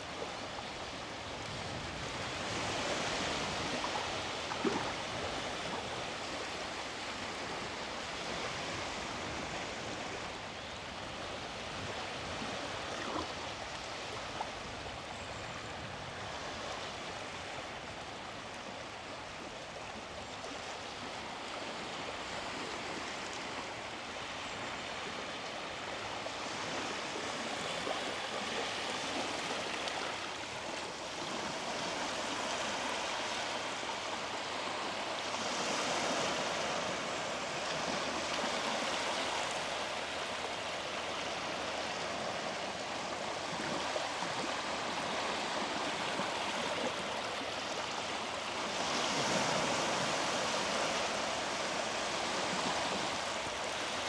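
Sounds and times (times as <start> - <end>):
sea waves washing onto beach: 25.8 - 54.0.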